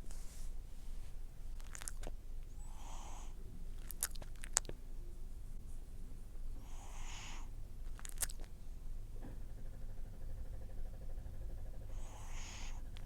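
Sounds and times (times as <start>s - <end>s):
cat snoring: 2.6s - 3.4s, 6.6s - 7.5s, 11.2s - 13.0s
mouth clicks: 7.9s - 8.5s.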